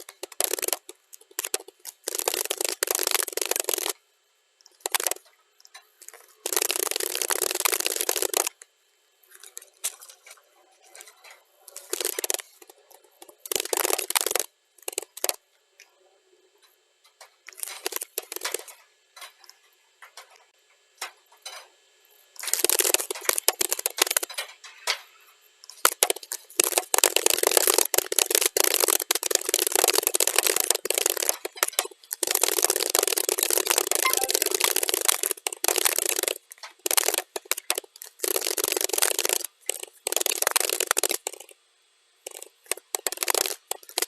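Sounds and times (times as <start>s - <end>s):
rapid keyboard typing: 0.0s - 4.0s, 4.7s - 5.2s, 6.1s - 8.6s, 11.7s - 15.4s, 17.5s - 18.8s, 22.4s - 24.4s, 25.7s - 41.5s, 42.2s - 44.0s.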